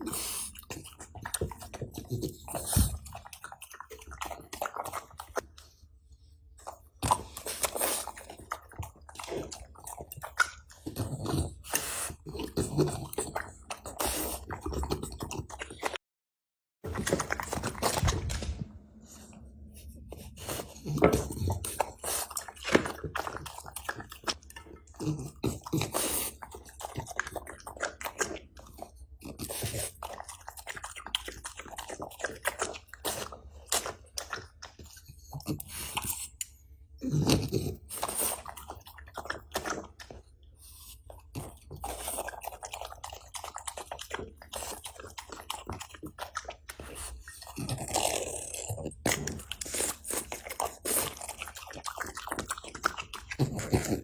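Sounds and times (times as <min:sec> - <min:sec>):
dog crunching and chewing: 0:00.0 - 0:05.8, 0:06.6 - 0:16.0, 0:16.8 - 0:54.0
dog gulping bites: 0:00.0 - 0:05.8, 0:16.8 - 0:18.6, 0:20.1 - 0:36.4, 0:37.1 - 0:54.0.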